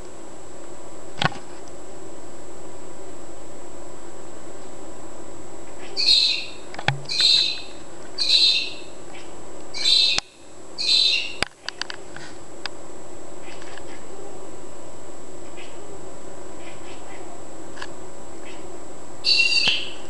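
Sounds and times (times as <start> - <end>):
bird calling: 5.7 - 11.5, 18.4 - 20.0.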